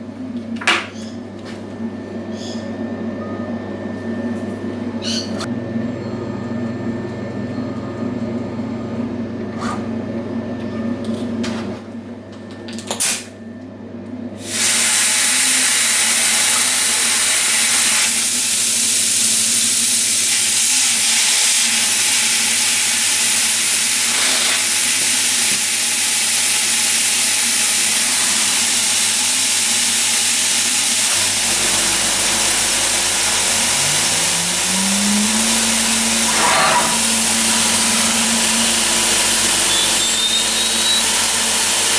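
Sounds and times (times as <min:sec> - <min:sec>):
motor spinning up: 0:27.8 - 0:41.9
machine motor hum: 0:27.9 - 0:41.9
loud steady rushing noise: 0:31.1 - 0:41.9.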